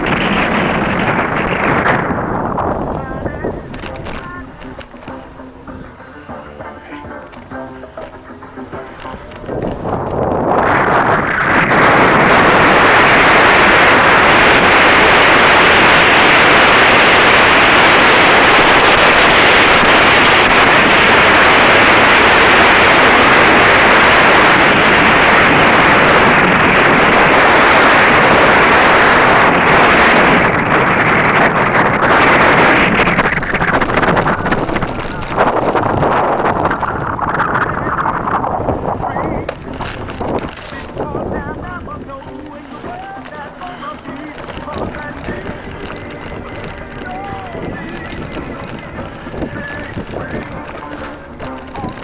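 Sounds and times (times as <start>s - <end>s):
wind buffeting microphone: 0.0s - 6.3s, 7.4s - 52.0s.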